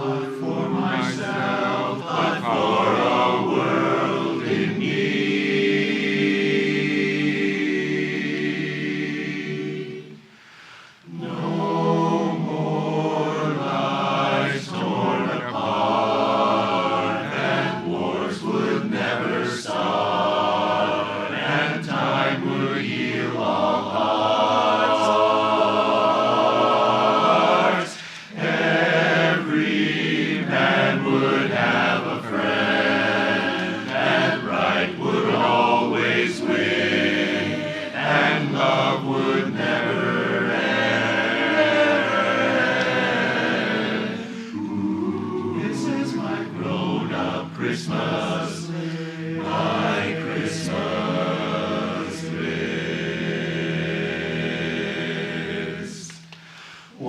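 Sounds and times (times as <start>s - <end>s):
barbershop chorus singing a cappella: 0.0s - 57.0s.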